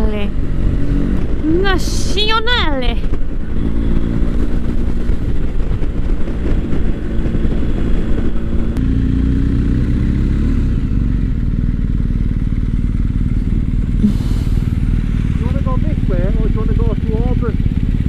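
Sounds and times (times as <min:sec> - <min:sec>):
wind rush: 0:00.0 - 0:08.8
motorcycle engine cruising: 0:00.0 - 0:18.0.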